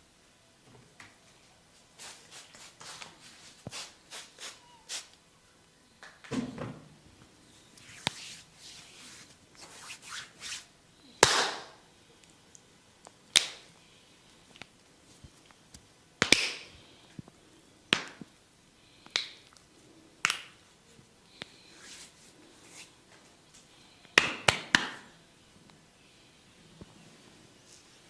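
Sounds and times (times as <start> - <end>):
hands slapping head: 11.2 - 11.8, 13.4 - 13.6, 16.2 - 16.7, 17.9 - 18.2, 20.2 - 20.6, 24.2 - 25.1.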